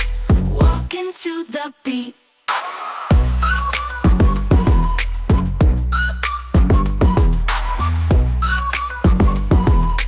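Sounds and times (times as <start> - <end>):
deep kick drums: 0.0 - 0.9, 3.1 - 6.0, 6.6 - 7.5, 8.1 - 8.5, 9.1 - 10.0
sustained bass: 0.0 - 0.9, 3.1 - 10.0.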